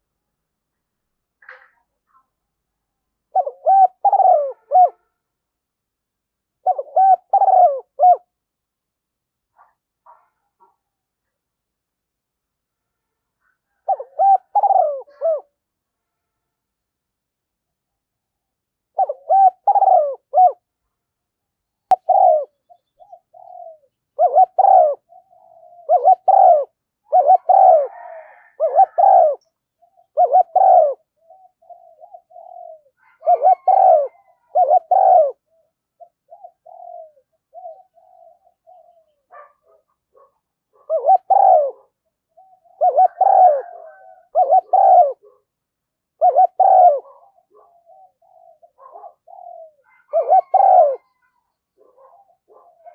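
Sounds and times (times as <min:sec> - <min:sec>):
doves cooing: 0:03.3 - 0:05.0, 0:06.6 - 0:08.4, 0:13.6 - 0:15.6, 0:18.9 - 0:20.6, 0:21.9 - 0:45.4, 0:46.2 - 0:52.9.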